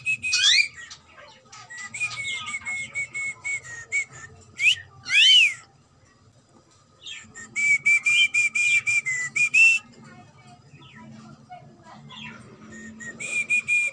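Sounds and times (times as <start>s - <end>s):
cockatiel whistling: 0.0s - 1.0s.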